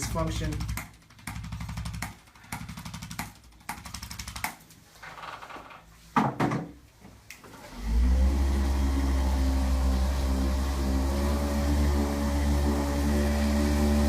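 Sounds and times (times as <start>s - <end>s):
electric motor humming: 7.8s - 14.0s.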